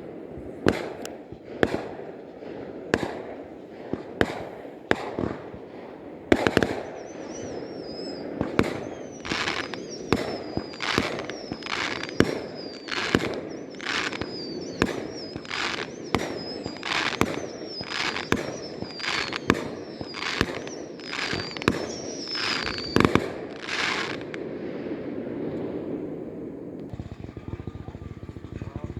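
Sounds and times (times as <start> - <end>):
crackling firework bursts: 0.0 - 28.9
firework bangs: 0.0 - 28.9
high wavering whistle: 6.8 - 23.1.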